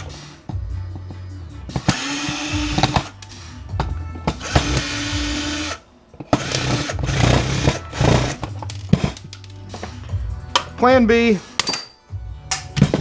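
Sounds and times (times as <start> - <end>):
clattering and handling noise: 6.1 - 10.9, 11.5 - 13.0.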